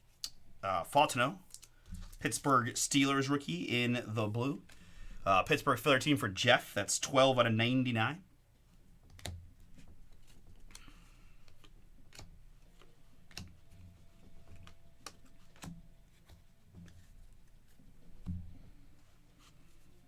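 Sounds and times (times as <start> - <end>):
cards clicking and tapping on table: 9.0 - 17.1.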